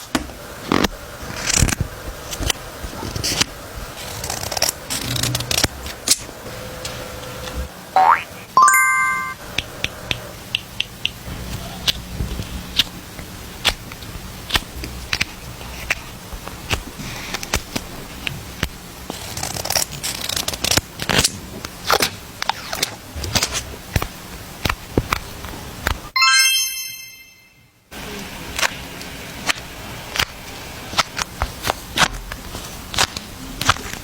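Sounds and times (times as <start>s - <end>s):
short bright chime: 8.6s - 9.4s, 26.2s - 27.6s.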